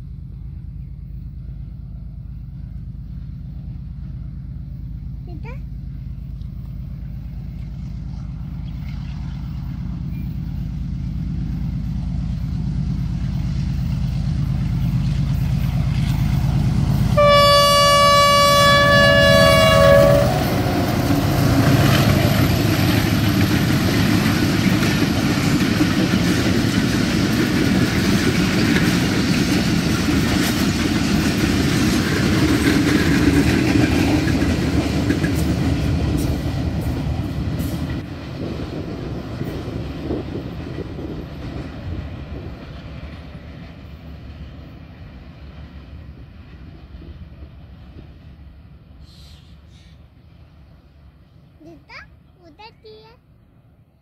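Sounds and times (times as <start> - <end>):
train engine rumble: 0.0 - 54.0
train wagons rolling by: 0.0 - 54.0
train horn blast: 17.1 - 21.0.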